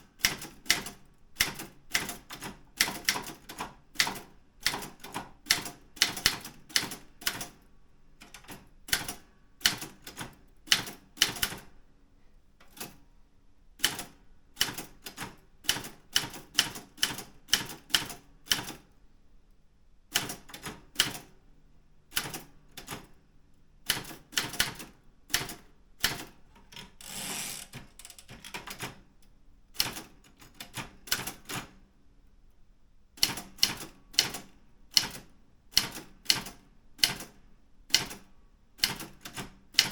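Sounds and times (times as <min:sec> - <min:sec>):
typewriter keystrokes: 0:00.2 - 0:07.6, 0:08.2 - 0:11.6, 0:13.8 - 0:18.8, 0:20.1 - 0:21.3, 0:22.2 - 0:23.1, 0:23.9 - 0:29.0, 0:29.8 - 0:31.8, 0:33.2 - 0:39.9
typewriter carriage sliding: 0:26.6 - 0:28.6.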